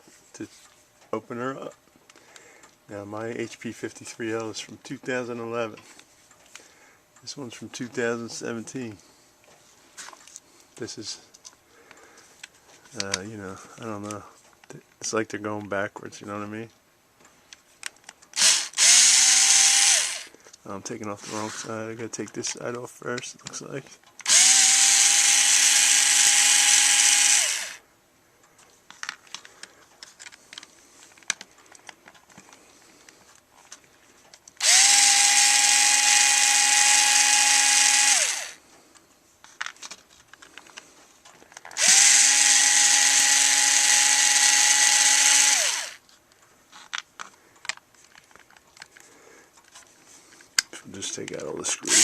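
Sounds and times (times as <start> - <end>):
light clicks and handling sounds: 0.0 - 18.4, 20.3 - 24.3, 28.4 - 34.6, 38.6 - 41.8, 46.0 - 51.9
cordless screwdriver running: 18.4 - 20.3, 24.2 - 27.8, 34.6 - 38.6, 41.8 - 46.0.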